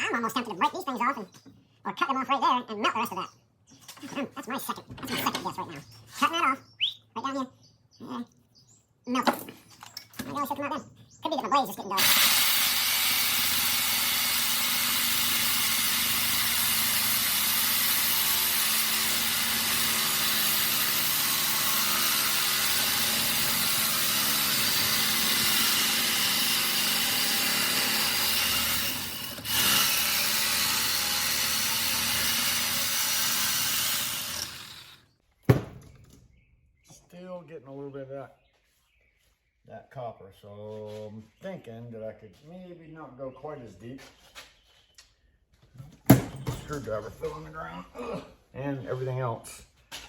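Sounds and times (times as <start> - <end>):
power saw cutting metal: 12.0 - 35.0.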